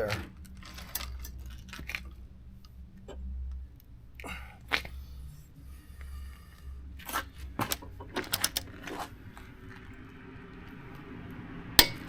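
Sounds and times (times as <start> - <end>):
wrench clicks and metallic knocks: 11.8 - 12.0.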